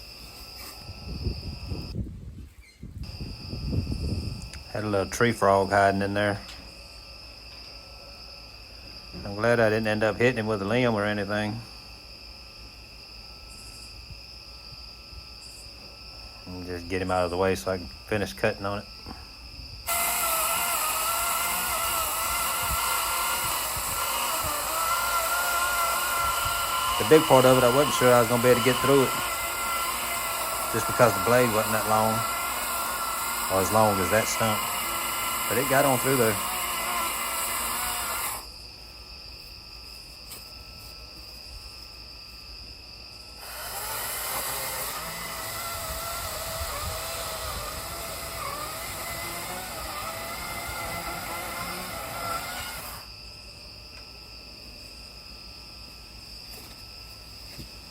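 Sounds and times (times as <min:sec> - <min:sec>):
electric chainsaw cutting wood: 0:19.8 - 0:38.6, 0:43.4 - 0:53.1.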